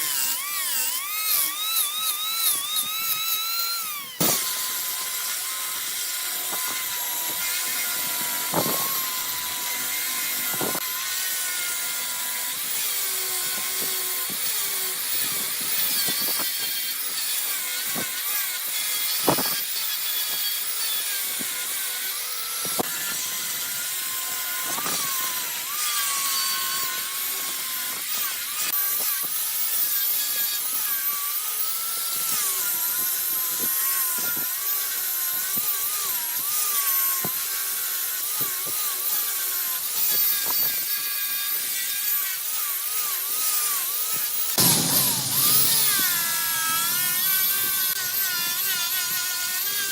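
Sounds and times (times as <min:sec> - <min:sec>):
lathe motor whine: 0:00.0 - 0:49.9
lathe tool hissing on wood: 0:43.2 - 0:49.9
sharp knocks: 0:44.6 - 0:47.6.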